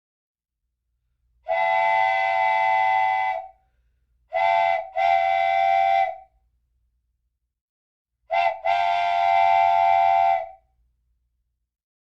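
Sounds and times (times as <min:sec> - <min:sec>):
train whistle blasts: 0:01.4 - 0:03.6, 0:04.3 - 0:06.3, 0:08.3 - 0:10.7.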